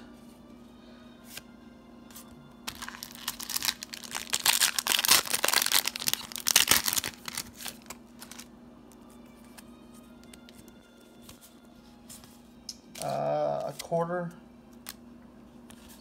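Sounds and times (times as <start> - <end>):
foil wrapper crinkling: 2.7 - 8.5.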